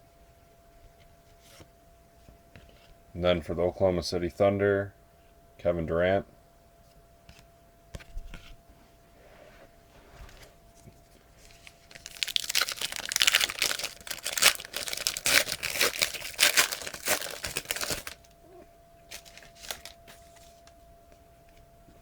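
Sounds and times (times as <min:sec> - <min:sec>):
wrapper crinkling and tearing: 0:11.4 - 0:18.3, 0:19.1 - 0:20.0.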